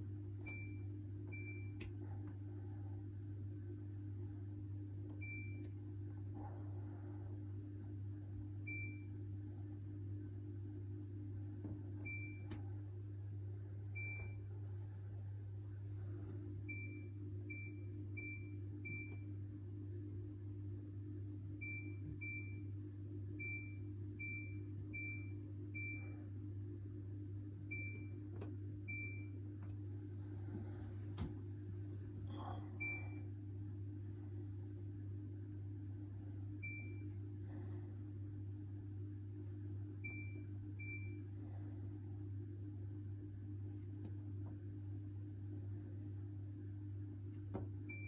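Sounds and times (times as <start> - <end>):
steady low hum: 0.0 - 48.0
washing machine control panel beeps: 0.4 - 2.0, 5.1 - 5.8, 8.6 - 9.3, 12.0 - 12.8, 13.9 - 14.5, 16.7 - 19.5, 21.6 - 22.8, 23.4 - 26.2, 27.6 - 29.8, 32.8 - 33.3, 36.6 - 37.2, 40.0 - 41.3, 47.6 - 48.0.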